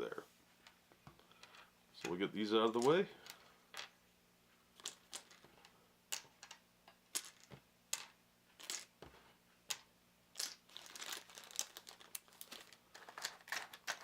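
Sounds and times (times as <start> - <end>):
game tokens clicking on a table: 4.8 - 5.5, 6.1 - 9.1, 9.7 - 10.6.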